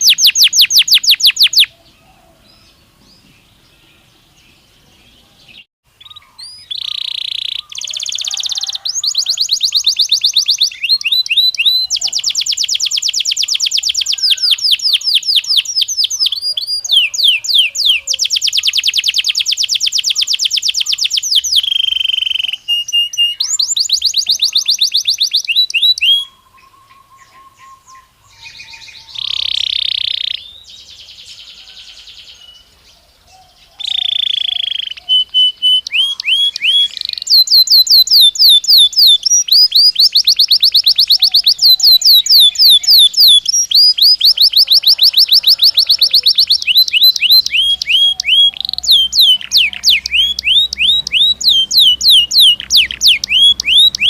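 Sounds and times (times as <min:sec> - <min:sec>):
canary singing fast trills: 0:00.0 - 0:54.0.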